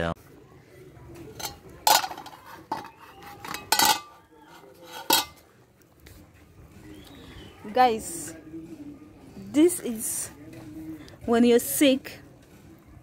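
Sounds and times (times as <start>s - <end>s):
metal pot clinking and clanking: 1.3s - 5.5s.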